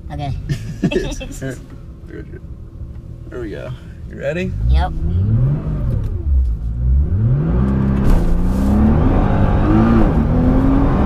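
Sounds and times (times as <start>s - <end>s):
car engine accelerating hard: 4.2s - 11.0s.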